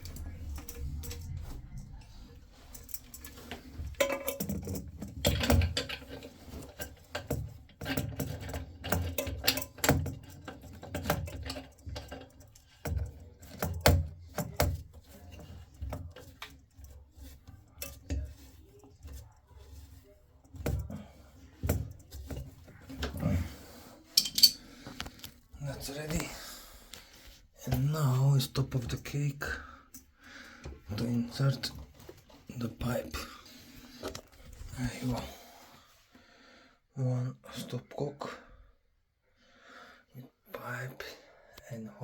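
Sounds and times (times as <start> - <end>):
metal pipe fittings clinking: 0.0 - 23.4, 24.1 - 25.4.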